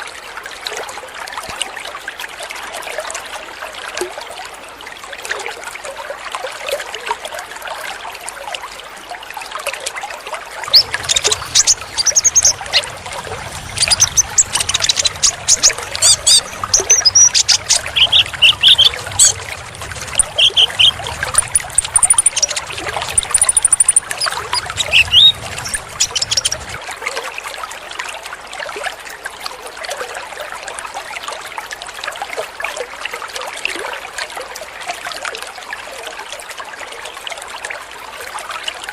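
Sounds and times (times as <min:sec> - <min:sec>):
water trickling: 0:09.1 - 0:29.4
bird chirping and trilling: 0:10.7 - 0:26.8.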